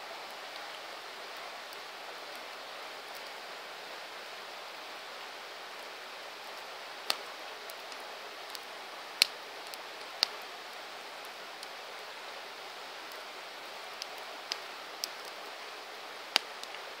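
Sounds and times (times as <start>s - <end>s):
campfire crackling: 0.0s - 17.0s
fire pops: 7.0s - 10.4s, 13.9s - 15.5s, 16.3s - 16.8s.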